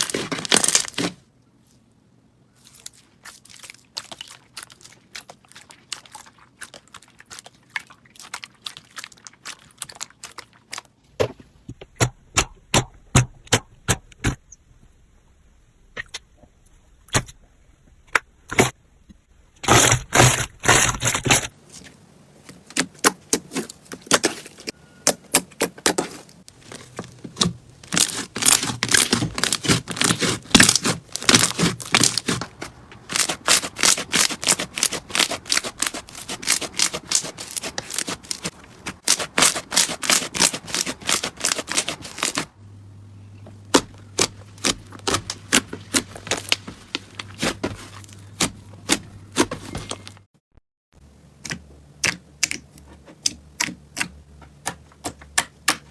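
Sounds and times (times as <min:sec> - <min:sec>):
slime crackling and popping: 0:26.5 - 0:32.5, 0:33.1 - 0:42.5.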